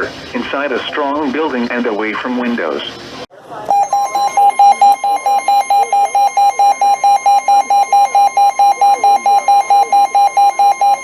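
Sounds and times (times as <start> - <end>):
rapid electronic beeping: 3.7 - 11.0
steady high alarm tone: 3.7 - 11.0.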